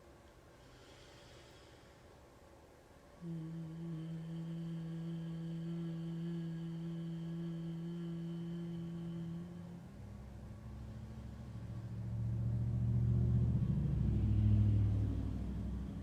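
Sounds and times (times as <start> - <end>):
woman humming low note: 3.2 - 16.0.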